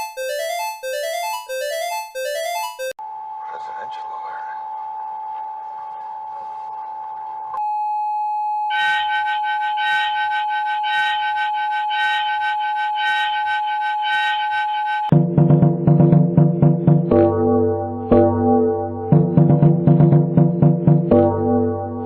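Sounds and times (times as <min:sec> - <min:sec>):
steady alarm tone: 0:00.0 - 0:03.8, 0:06.8 - 0:15.3
keyboard-like music: 0:00.0 - 0:04.9, 0:08.7 - 0:22.0.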